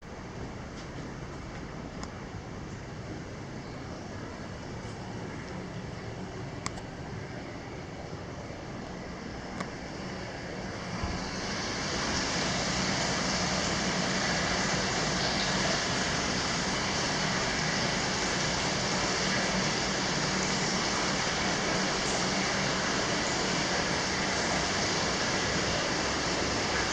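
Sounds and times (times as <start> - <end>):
faint clicks: 6.6 - 6.9
water pouring into a bath: 10.8 - 26.9.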